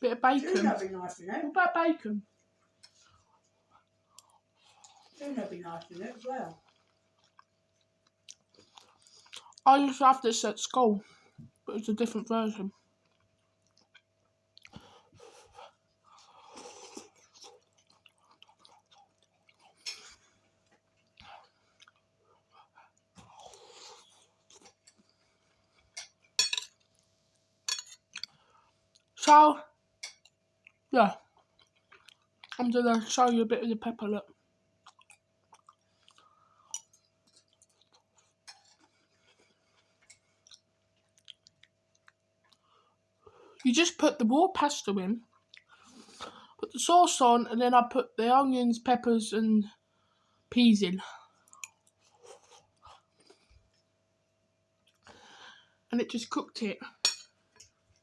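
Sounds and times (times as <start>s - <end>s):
faint steady hum: 0.0s - 58.0s
person chewing food: 2.4s - 5.2s, 6.6s - 9.6s, 12.9s - 29.2s, 29.9s - 32.6s, 34.4s - 43.6s, 45.3s - 46.6s, 51.3s - 54.1s, 54.7s - 55.5s
breathing: 11.0s - 11.4s, 14.7s - 16.7s, 28.3s - 28.8s, 36.0s - 36.8s, 42.6s - 43.6s, 45.7s - 46.6s, 49.9s - 51.5s, 55.0s - 55.9s.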